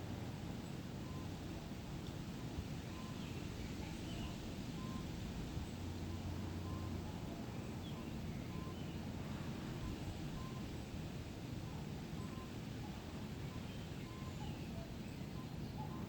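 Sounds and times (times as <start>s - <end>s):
faint bird chirps: 2.9s - 5.1s, 6.6s - 9.0s, 9.8s - 10.7s, 11.7s - 16.0s.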